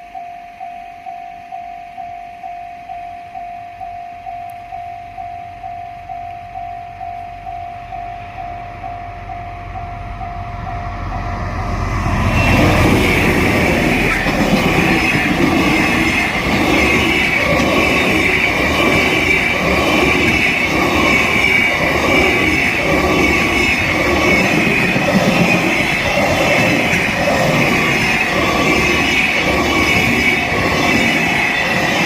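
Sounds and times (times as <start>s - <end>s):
train wheel squeal: 7.5s - 32.0s
train wagons clattering over rails: 10.7s - 32.0s.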